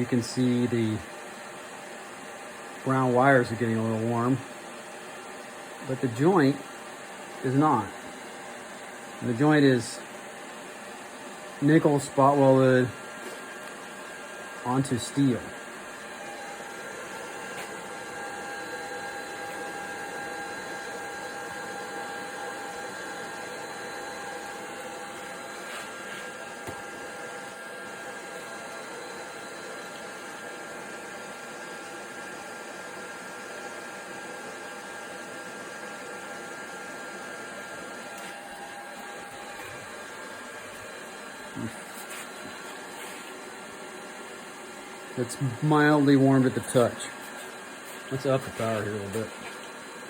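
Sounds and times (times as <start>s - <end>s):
cooling fan whirring: 0.0s - 50.0s
faint high electrical whine: 5.7s - 30.4s, 45.2s - 49.7s.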